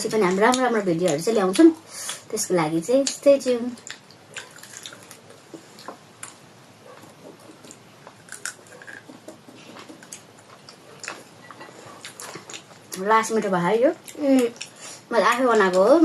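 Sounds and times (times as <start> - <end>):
person chewing food: 3.8 - 13.0.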